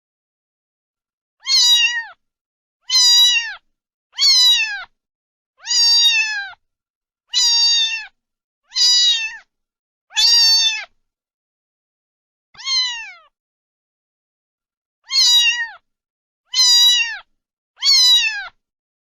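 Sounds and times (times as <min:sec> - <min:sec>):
cat meowing: 0:01.4 - 0:02.2, 0:02.8 - 0:05.0, 0:05.6 - 0:06.6, 0:07.3 - 0:09.5, 0:10.1 - 0:11.0, 0:12.6 - 0:13.4, 0:15.0 - 0:15.8, 0:16.5 - 0:18.6.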